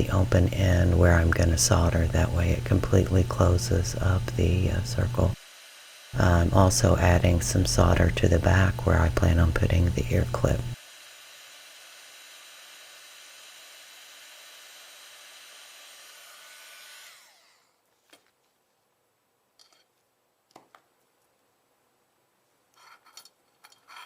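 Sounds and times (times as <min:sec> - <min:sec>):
fan winding down whine: 0:00.0 - 0:11.5.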